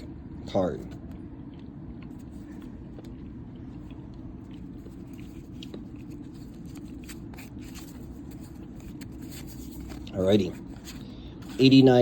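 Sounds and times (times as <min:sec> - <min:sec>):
trading cards rustling: 0:04.6 - 0:12.0.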